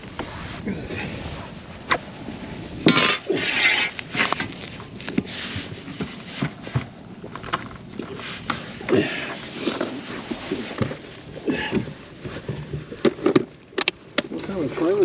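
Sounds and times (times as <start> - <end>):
loud scraping rustle: 0.0 - 7.0.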